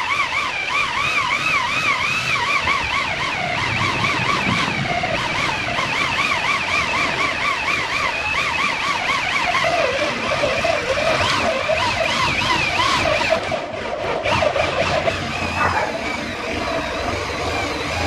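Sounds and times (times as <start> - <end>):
siren-like warbling tones: 15.4 - 16.4
low warble: 15.5 - 16.4.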